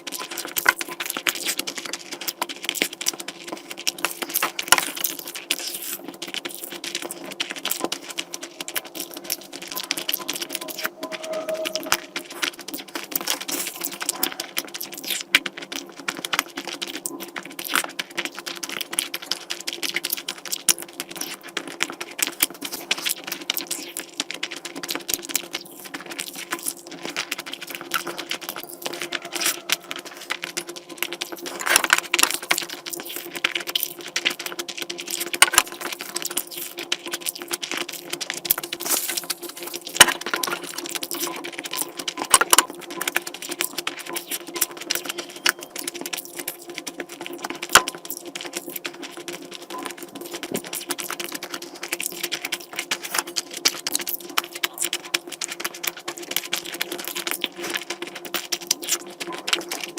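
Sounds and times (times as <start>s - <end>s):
chewing and eating: 0.0s - 59.9s
steady low hum: 4.1s - 12.7s.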